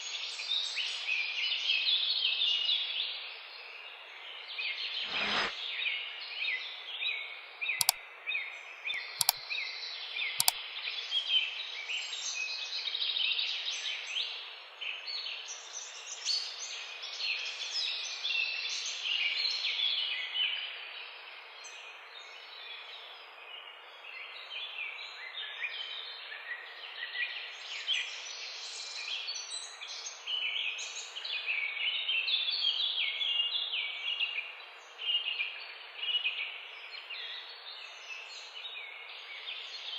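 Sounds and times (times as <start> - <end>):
small birds chirping: 7.6 - 10.6
sharp clicks: 9.2 - 9.4.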